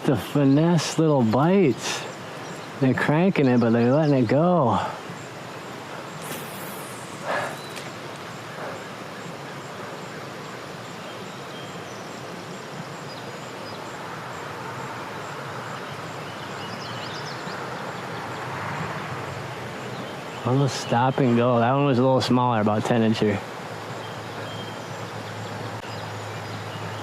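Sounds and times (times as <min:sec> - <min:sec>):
creek water flowing: 0:00.0 - 0:27.0
rustle: 0:00.0 - 0:27.0
faint bird chirps: 0:01.7 - 0:14.0, 0:23.9 - 0:27.0.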